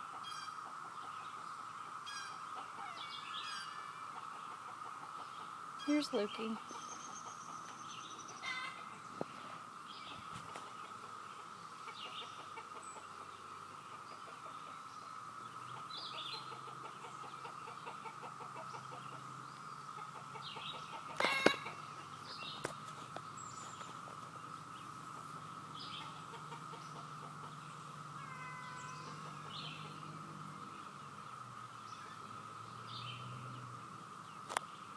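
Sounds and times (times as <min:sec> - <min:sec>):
cicadas buzzing: 0:00.0 - 0:34.9
bird chirps: 0:18.6 - 0:33.3.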